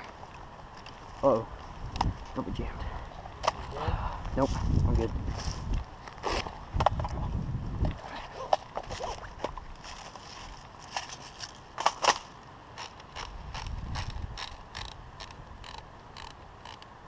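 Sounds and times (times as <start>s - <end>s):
airsoft rifle clicks: 11.8s - 16.9s.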